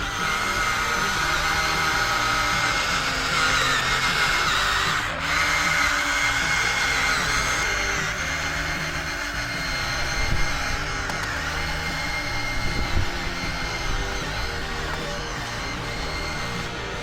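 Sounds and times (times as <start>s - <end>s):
pump motor whining: 0.0s - 17.0s.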